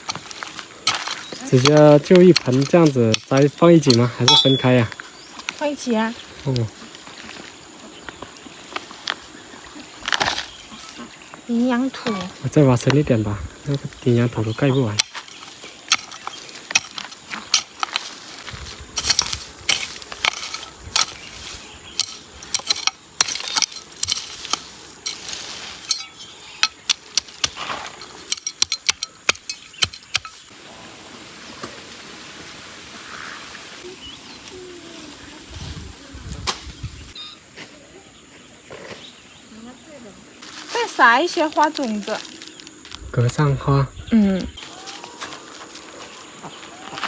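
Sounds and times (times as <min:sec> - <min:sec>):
garden tool clinking on stones: 0:00.0 - 0:06.9, 0:13.7 - 0:30.5, 0:40.4 - 0:43.0, 0:44.6 - 0:47.0
steady hiss: 0:01.4 - 0:28.4, 0:29.2 - 0:37.2.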